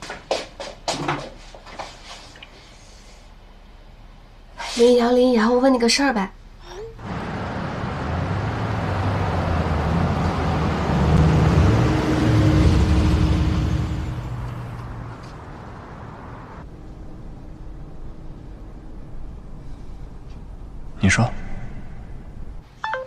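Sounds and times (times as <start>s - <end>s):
car passing by: 7.0s - 16.7s.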